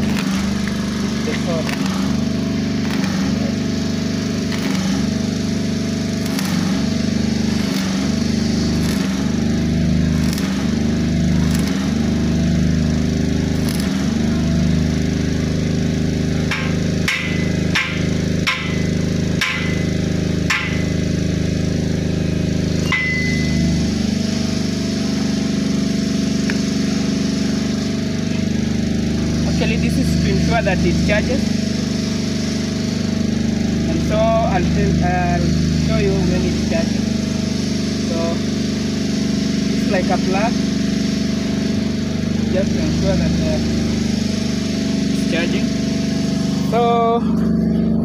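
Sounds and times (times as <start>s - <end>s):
small engine running: 0.0s - 48.0s
hammer blows on metal: 16.5s - 21.0s, 22.8s - 23.8s.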